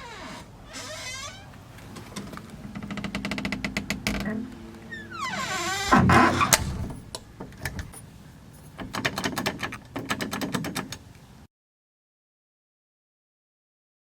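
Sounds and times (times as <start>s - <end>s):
door hinge creaking and squeaking: 0.0s - 8.1s.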